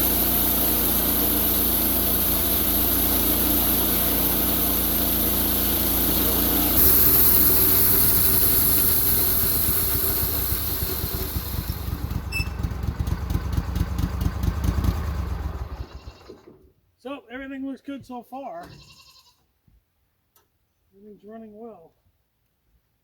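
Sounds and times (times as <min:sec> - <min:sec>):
band blade cutting wood hiss: 0:00.0 - 0:12.3
sawmill engine running: 0:00.0 - 0:16.6.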